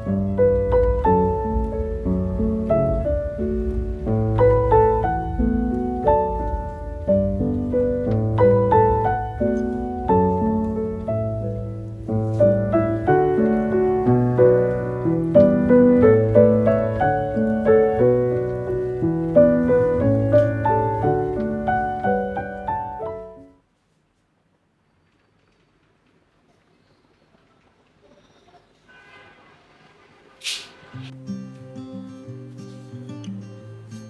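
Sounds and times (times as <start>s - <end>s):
gentle solo piano piece: 0.0s - 23.5s.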